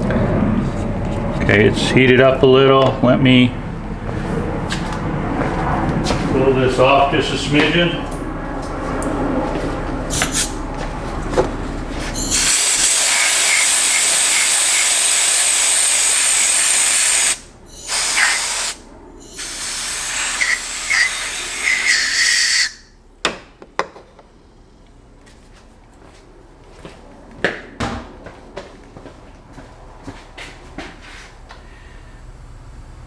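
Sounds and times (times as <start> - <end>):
low rumbling handling noise: 0.0 - 12.2
rushing air hiss: 10.1 - 10.6, 12.1 - 22.8.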